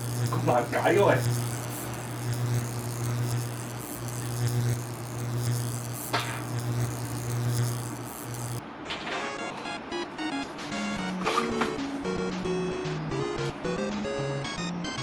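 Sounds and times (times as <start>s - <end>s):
low electric buzz: 0.0s - 8.6s.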